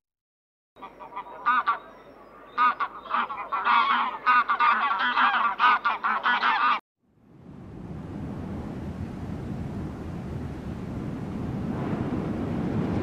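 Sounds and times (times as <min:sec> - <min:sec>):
chickens calling: 0:00.8 - 0:06.8.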